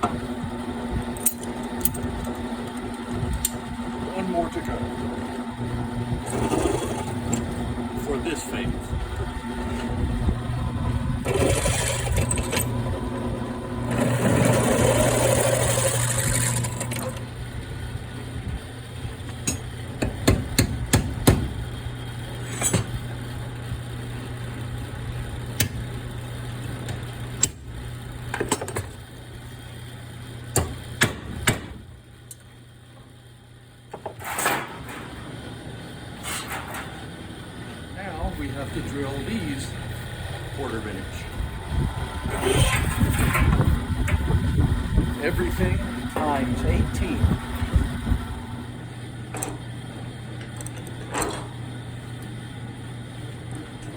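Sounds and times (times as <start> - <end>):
machine motor humming: 0.0 - 28.4, 33.6 - 53.9
harsh drilling noise: 6.2 - 8.3, 11.2 - 17.3.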